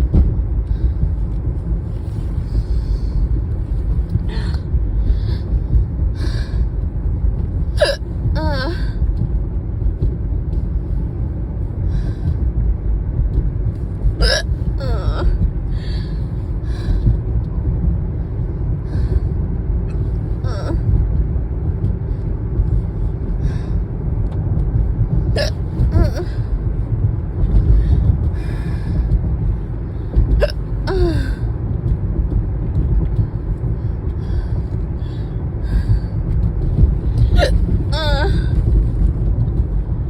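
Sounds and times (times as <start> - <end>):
car cabin rumble: 0.0 - 40.0
person hiccuping: 7.8 - 8.8, 14.2 - 15.3, 25.4 - 26.4, 37.3 - 38.4.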